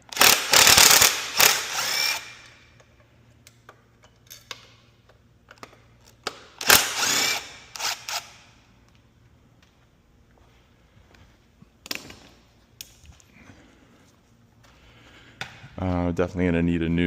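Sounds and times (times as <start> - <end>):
power drill whining: 0.1 - 2.6, 6.6 - 8.4.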